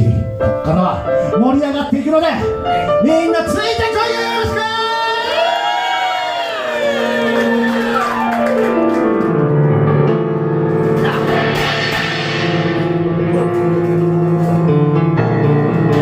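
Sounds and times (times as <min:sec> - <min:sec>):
grand piano playing: 0:00.0 - 0:05.3, 0:06.3 - 0:16.0
crowd whooping: 0:04.9 - 0:08.9.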